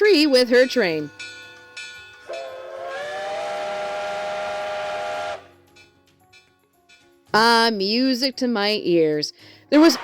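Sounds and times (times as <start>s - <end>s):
steam whistle blast: 2.3s - 5.5s.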